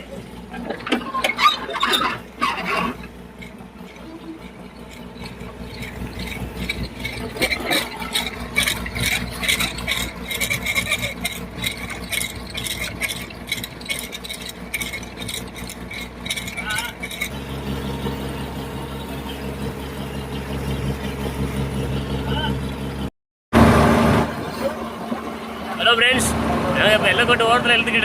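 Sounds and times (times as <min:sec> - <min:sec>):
boat engine running: 0:00.0 - 0:28.0
clattering rattle: 0:00.2 - 0:17.4.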